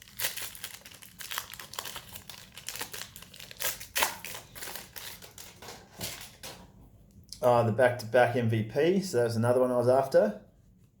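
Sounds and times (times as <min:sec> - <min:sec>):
wrapper crinkling: 0:00.0 - 0:06.4.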